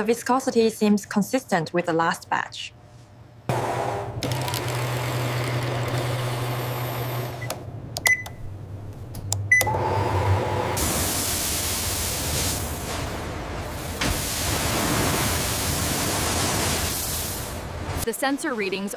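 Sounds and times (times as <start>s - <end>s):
machinery humming and hissing: 9.7s - 18.0s.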